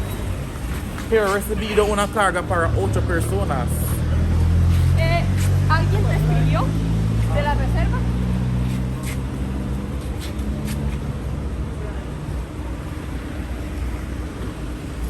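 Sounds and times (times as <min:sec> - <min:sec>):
low engine-like hum: 0:00.0 - 0:15.0.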